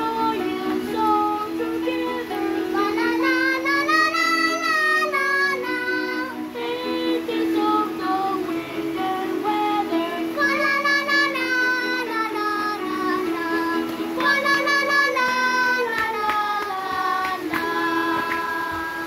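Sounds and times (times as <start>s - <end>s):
children singing a carol: 0.0s - 19.0s
instrumental backing music: 0.0s - 19.0s.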